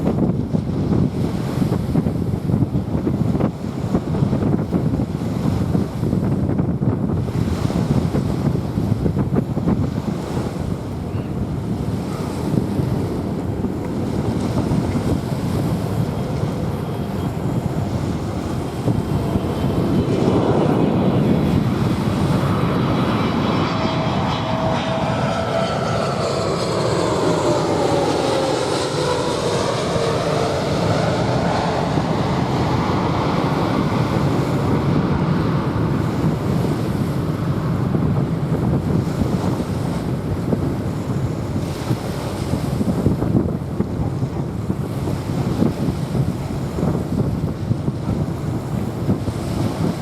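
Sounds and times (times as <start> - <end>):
jet airliner passing overhead: 0.0 - 50.0
wind: 0.0 - 50.0
surf: 3.0 - 50.0.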